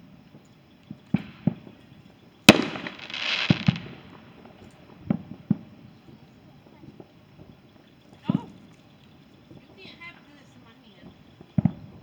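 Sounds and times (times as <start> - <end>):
fireworks booming: 0.9 - 7.6, 10.9 - 12.0
firework hiss: 1.0 - 5.9
sharp loud firework bang: 2.5 - 4.2.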